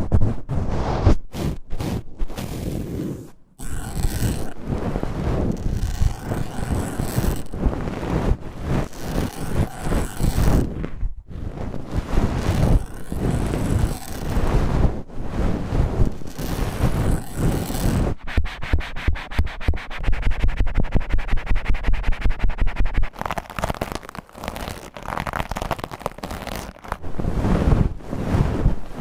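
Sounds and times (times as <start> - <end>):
ear scraper scratching microphone: 0.0 - 29.0.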